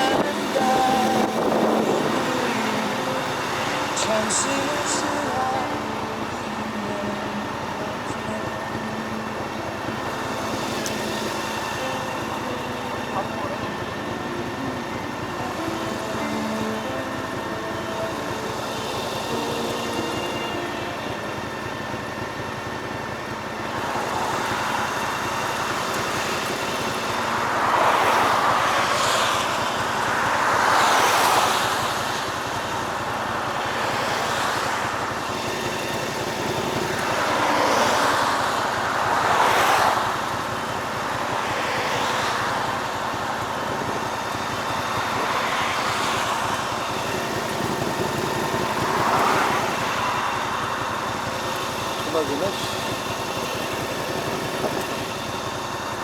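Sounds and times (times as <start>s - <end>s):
rushing wind noise: 0.0s - 5.2s
motorcycle engine running: 0.0s - 56.0s.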